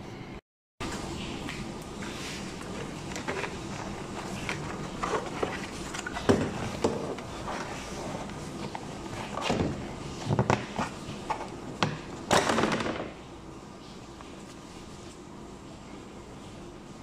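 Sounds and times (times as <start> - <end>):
rustling scrape: 2.0 - 11.5.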